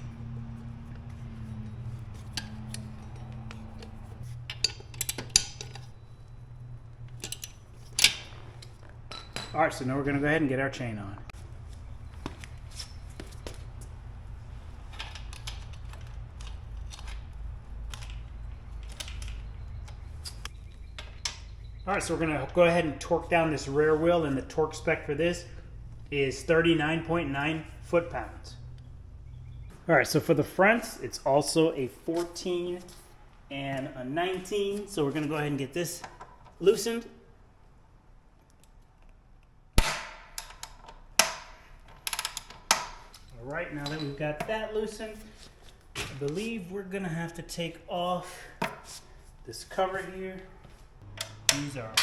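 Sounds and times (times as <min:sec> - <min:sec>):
steady low hum: 0:00.0 - 0:40.4.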